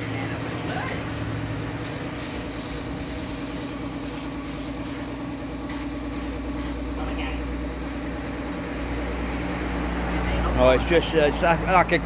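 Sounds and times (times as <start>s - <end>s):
steady low hum: 0.0s - 10.3s
aerosol spray hissing: 1.8s - 6.8s.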